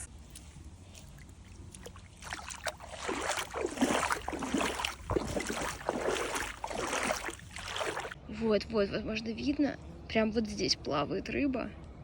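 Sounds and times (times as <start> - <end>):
water splashing around wading legs: 0.0 - 8.2.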